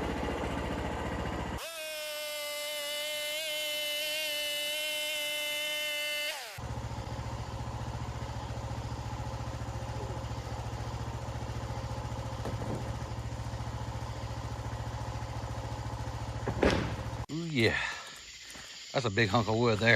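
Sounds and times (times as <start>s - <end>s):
engine idling with low pulse: 0.0s - 1.6s, 6.6s - 18.7s
bandsaw whine: 0.0s - 17.3s.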